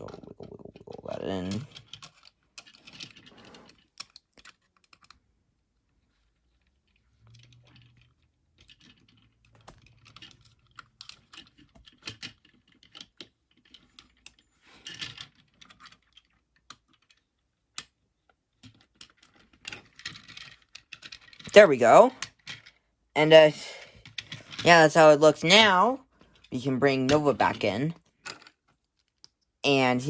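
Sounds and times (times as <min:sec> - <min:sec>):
plastic clicks and scraping: 0:00.0 - 0:05.3, 0:06.4 - 0:21.5.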